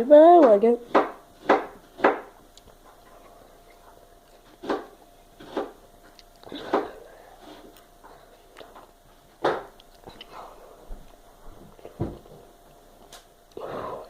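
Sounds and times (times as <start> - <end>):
faint steady hum: 0.0 - 14.0
person chewing fruit: 1.0 - 14.0.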